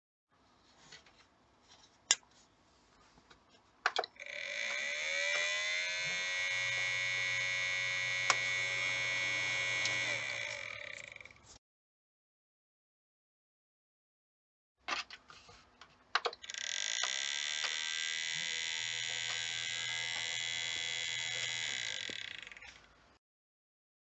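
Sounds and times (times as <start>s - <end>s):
small fan grating buzz: 4.2s - 11.4s, 17.1s - 22.7s.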